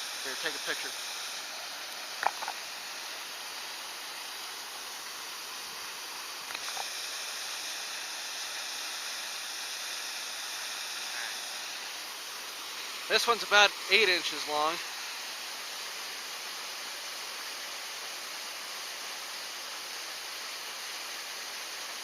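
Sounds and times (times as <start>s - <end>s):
stream water rushing: 0.0s - 18.1s.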